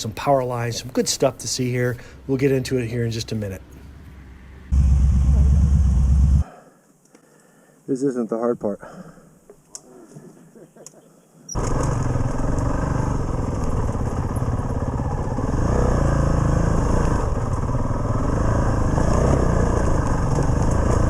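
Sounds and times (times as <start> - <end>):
motorcycle engine running: 4.7 - 6.4, 11.6 - 21.0.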